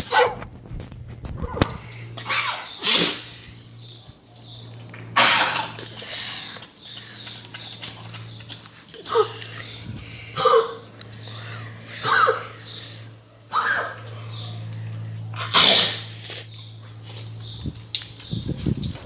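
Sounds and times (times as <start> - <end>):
dog coughing: 5.1 - 6.5, 9.0 - 9.6, 10.3 - 10.9, 11.9 - 12.7, 15.4 - 16.2.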